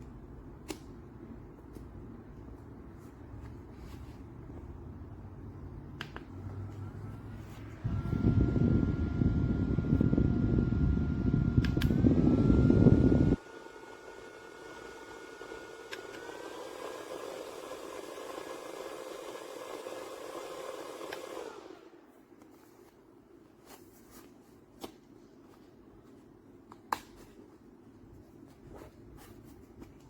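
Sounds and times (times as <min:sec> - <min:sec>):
handheld fan motor whine: 0:06.6 - 0:22.1
fan button clicks: 0:11.5 - 0:12.4.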